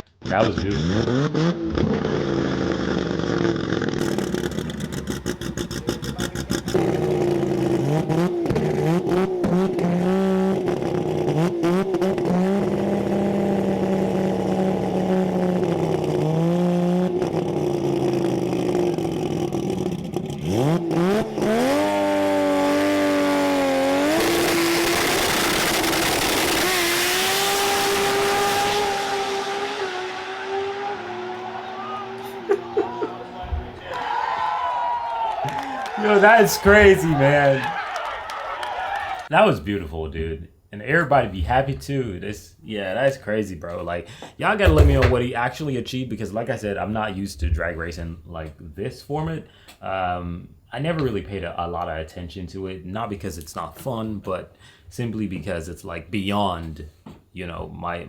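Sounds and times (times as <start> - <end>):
car engine revving hard: 0.5 - 33.8
engine pops: 32.6 - 34.1, 44.6 - 45.4.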